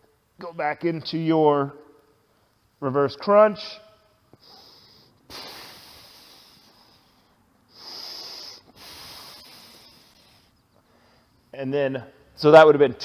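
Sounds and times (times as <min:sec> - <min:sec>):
person exhaling forcefully: 0:04.5 - 0:07.1, 0:07.7 - 0:10.4.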